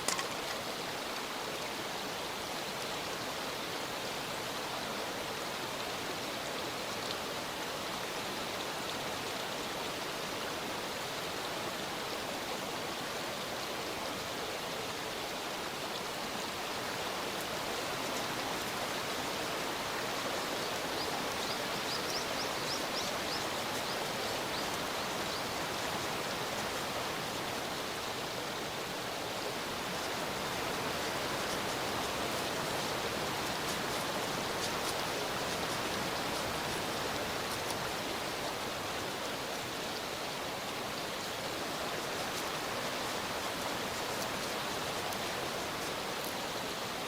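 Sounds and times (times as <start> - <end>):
food sizzling over campfire: 28.9 - 39.8, 40.8 - 47.0
faint crackles: 30.0 - 38.0.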